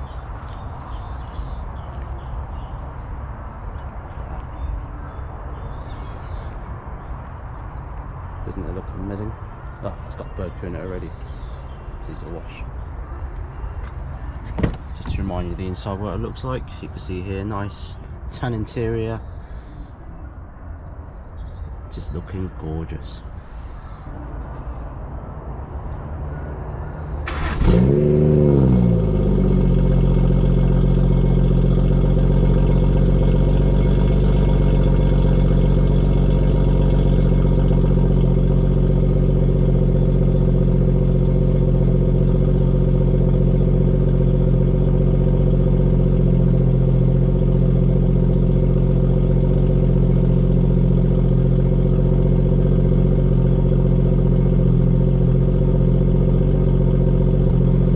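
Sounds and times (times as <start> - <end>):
car engine starting and idling: 8.0 - 19.8, 27.0 - 57.9
engine rev flare: 27.2 - 57.9.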